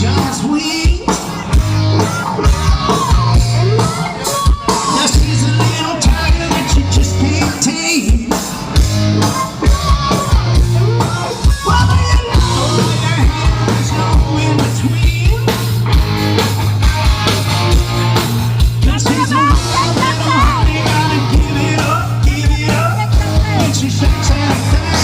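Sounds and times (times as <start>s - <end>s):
bass guitar: 0.0s - 25.0s
drum beat: 0.0s - 25.0s
electric guitar: 0.0s - 25.0s
person singing: 9.2s - 15.6s, 18.8s - 25.0s.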